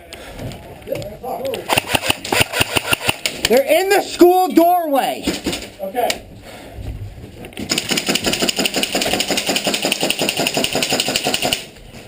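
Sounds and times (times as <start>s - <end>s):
airsoft rifle full-auto burst: 1.7s - 3.3s, 7.7s - 11.7s.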